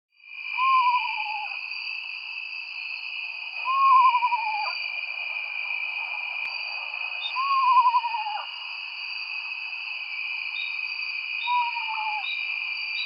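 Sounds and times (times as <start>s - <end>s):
owl calling: 0.5s - 1.6s, 3.6s - 4.8s, 7.2s - 8.5s, 11.4s - 12.4s.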